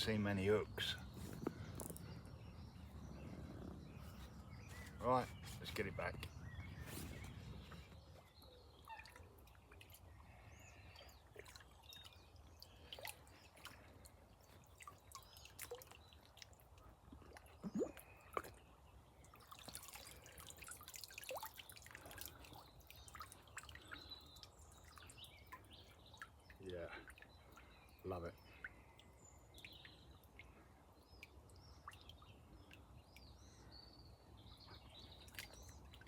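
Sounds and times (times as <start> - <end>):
water dripping and splashing: 0.8 - 2.2, 8.8 - 33.6, 34.9 - 36.0
water plops: 11.3 - 13.9, 14.6 - 18.6.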